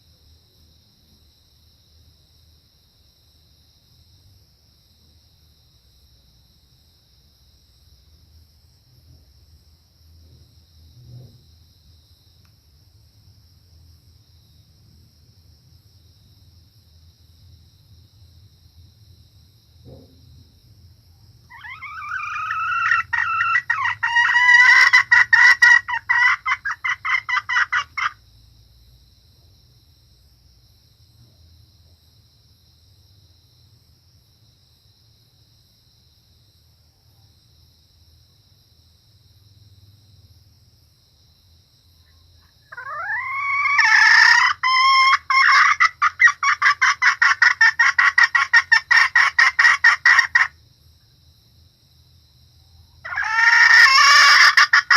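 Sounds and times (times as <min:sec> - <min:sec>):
faint high insect-like tones: 0:00.0 - 0:54.9
hen cackling calls: 0:21.5 - 0:28.2, 0:42.7 - 0:50.5, 0:53.0 - 0:54.9.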